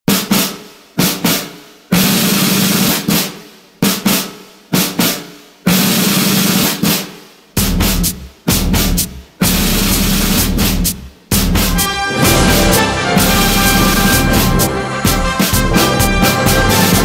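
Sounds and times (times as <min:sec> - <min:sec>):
snare drum hits and rolls: 0:00.1 - 0:17.0
bass line: 0:09.7 - 0:17.0.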